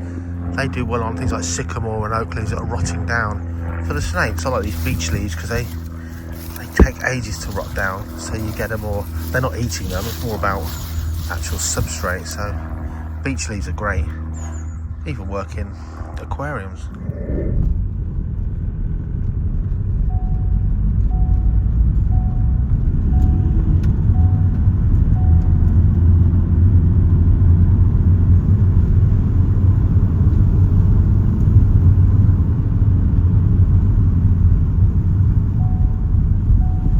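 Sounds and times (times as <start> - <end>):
vehicle engine low rumble: 0.0 - 36.9
short beeps: 20.1 - 25.8, 35.6 - 36.9.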